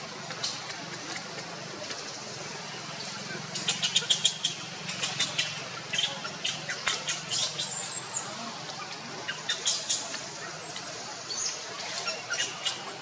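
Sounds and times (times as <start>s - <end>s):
monkeys squeaking: 3.7s - 8.4s, 9.3s - 12.9s.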